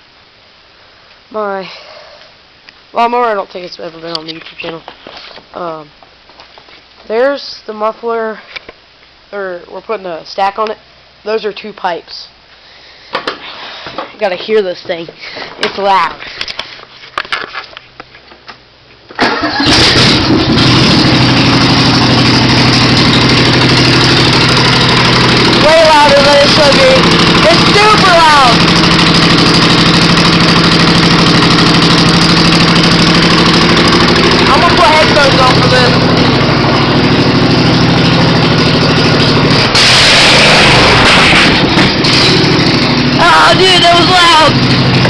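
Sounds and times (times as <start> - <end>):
loud lawn mower engine: 19.2 - 45.0.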